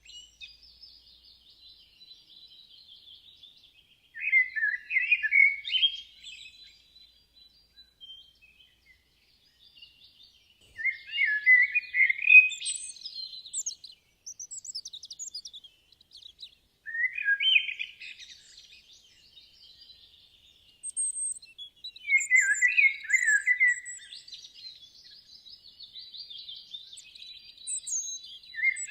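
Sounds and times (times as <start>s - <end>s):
faint chirping: 10.7s - 26.0s
songbird warbling: 22.0s - 24.2s.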